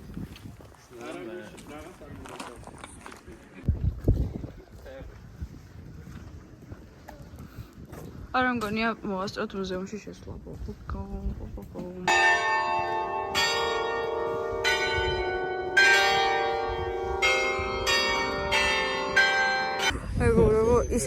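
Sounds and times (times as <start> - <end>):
church bells ringing: 12.1 - 20.8.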